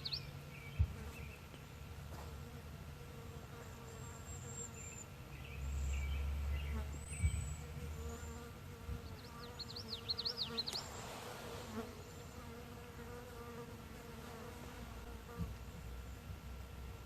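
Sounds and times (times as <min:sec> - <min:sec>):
bird twittering chirps: 0:00.0 - 0:01.4, 0:04.0 - 0:08.4, 0:09.0 - 0:11.1
flying insect buzzing: 0:07.5 - 0:15.7.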